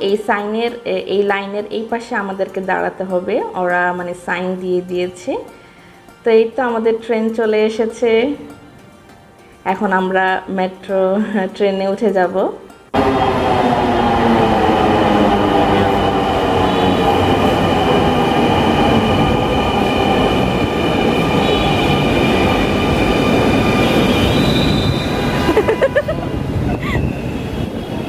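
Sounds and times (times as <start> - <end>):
rail and wheel noise: 12.9 - 28.0.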